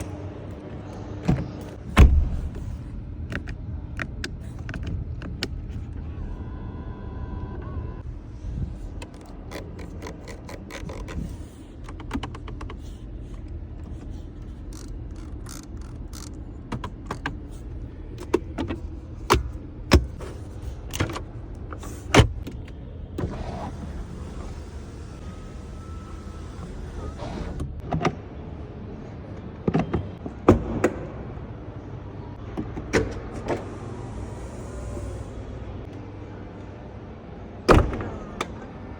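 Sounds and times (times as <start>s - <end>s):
steady low rumble: 8.0s - 9.6s.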